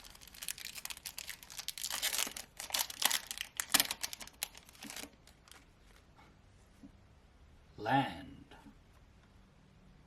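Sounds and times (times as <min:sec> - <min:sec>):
card pack wrapper tearing and crinkling: 0:00.0 - 0:05.6.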